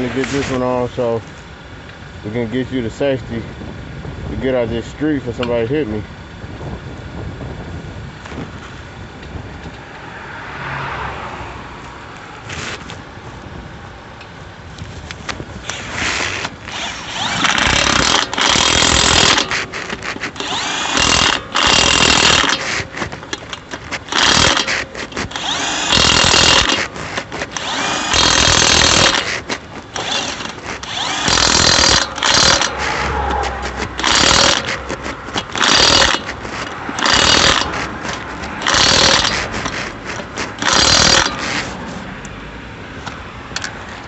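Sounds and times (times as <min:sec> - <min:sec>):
impact wrench bursts: 0:15.6 - 0:41.9.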